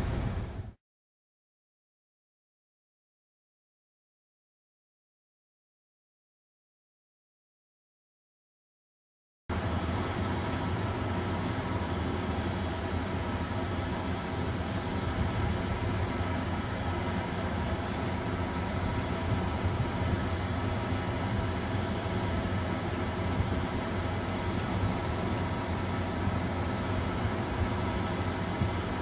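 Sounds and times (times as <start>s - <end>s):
vehicle engine and road noise: 0.0s - 0.8s, 9.5s - 29.0s.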